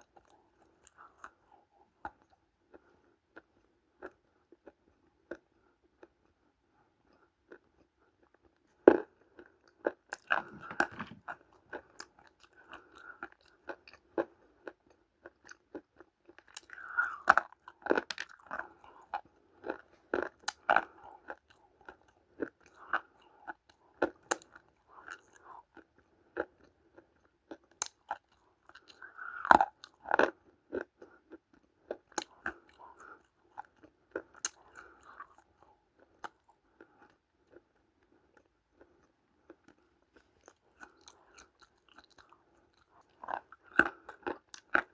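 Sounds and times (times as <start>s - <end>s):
person chewing clay: 0.0s - 6.4s, 7.0s - 44.9s
sharp crunching snaps: 10.1s - 13.1s, 16.4s - 18.7s.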